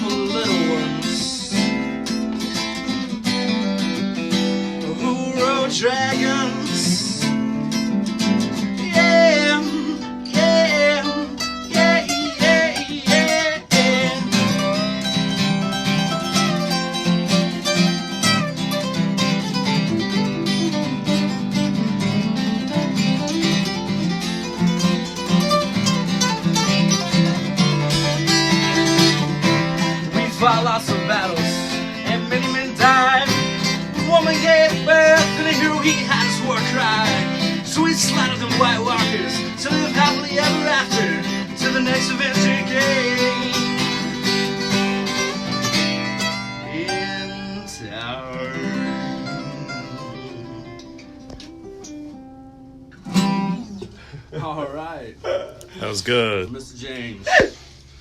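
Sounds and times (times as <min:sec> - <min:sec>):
person singing: 0:00.0 - 0:01.8, 0:04.8 - 0:07.4, 0:08.6 - 0:15.0, 0:29.7 - 0:44.2, 0:46.6 - 0:50.9
acoustic guitar strummed: 0:00.0 - 0:54.4.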